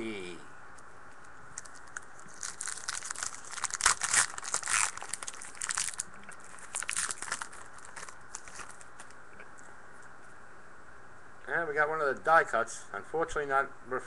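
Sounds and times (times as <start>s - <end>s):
foil wrapper tearing and crinkling: 1.6s - 9.2s.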